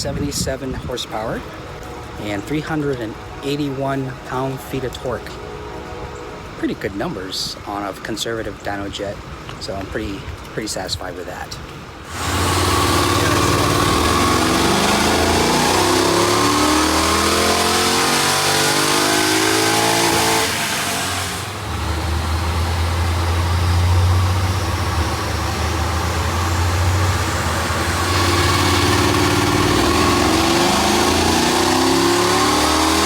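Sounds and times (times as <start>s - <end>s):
car engine revving on dyno: 12.1s - 33.0s.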